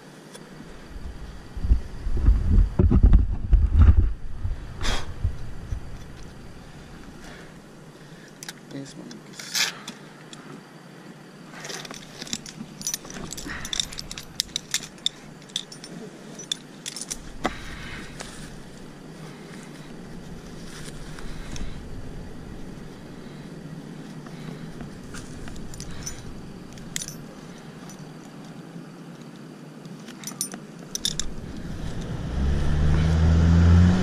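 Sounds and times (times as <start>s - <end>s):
background hiss: 0.0s - 34.0s
metallic jangling and clinking: 11.6s - 23.4s, 24.0s - 28.2s, 30.1s - 32.2s.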